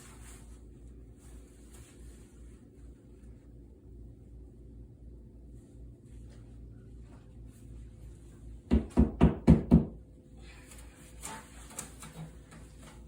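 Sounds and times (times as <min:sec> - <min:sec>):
knocks on wall: 0:08.7 - 0:10.0.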